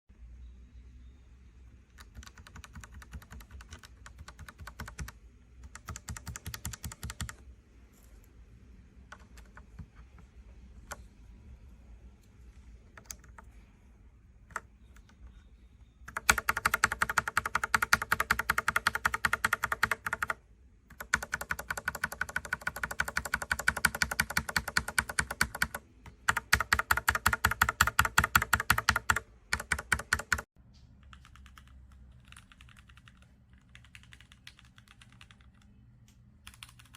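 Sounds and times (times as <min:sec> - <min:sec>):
mechanical keyboard typing: 0:01.9 - 0:07.5, 0:09.0 - 0:11.1, 0:12.8 - 0:13.6, 0:14.4 - 0:15.3, 0:16.0 - 0:35.7, 0:36.4 - 0:36.9.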